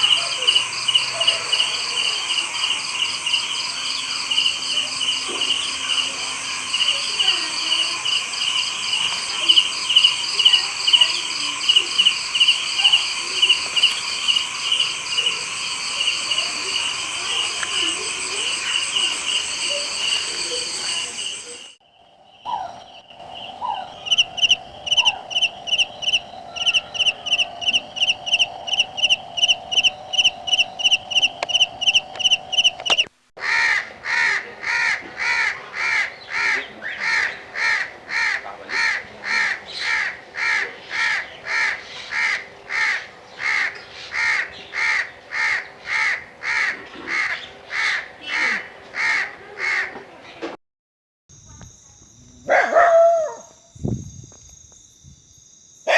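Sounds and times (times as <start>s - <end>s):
crow cawing: 23.6s - 50.0s.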